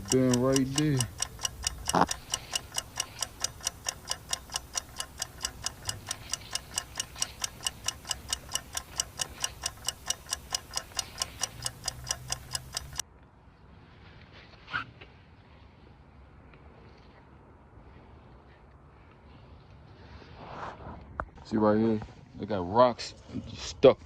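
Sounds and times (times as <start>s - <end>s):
rapid mechanical ticking: 0.0s - 13.0s.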